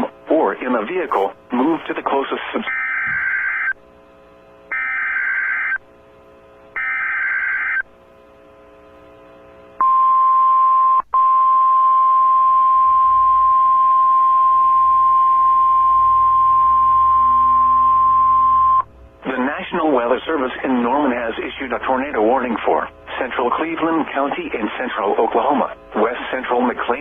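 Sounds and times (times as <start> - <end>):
steady attention tone: 8.5 - 27.0.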